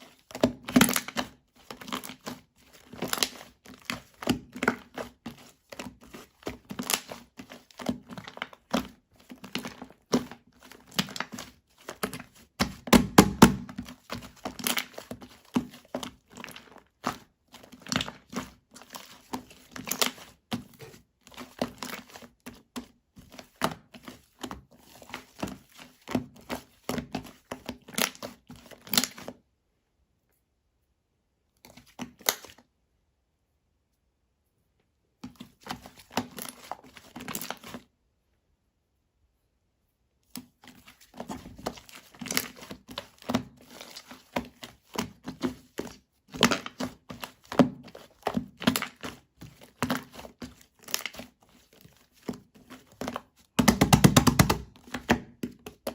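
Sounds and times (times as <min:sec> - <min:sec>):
crinkling and rustling: 0:00.0 - 0:29.4, 0:34.8 - 0:37.9, 0:40.2 - 0:55.9.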